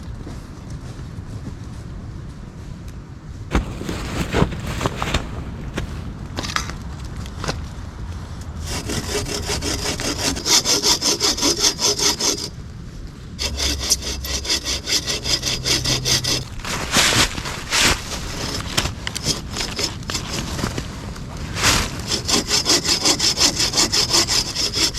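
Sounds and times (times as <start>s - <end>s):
hand saw cutting wood: 8.6s - 12.5s, 13.4s - 24.9s.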